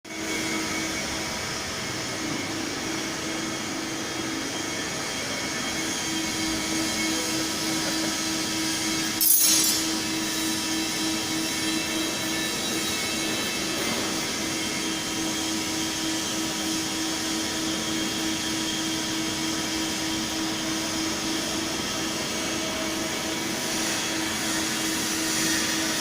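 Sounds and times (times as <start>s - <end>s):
milling machine whining: 0.1s - 26.0s.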